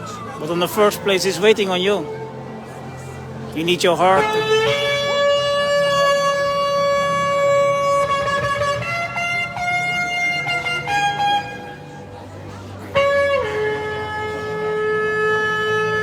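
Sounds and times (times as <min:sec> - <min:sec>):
shofar blasts: 0:04.2 - 0:12.1, 0:12.9 - 0:16.0.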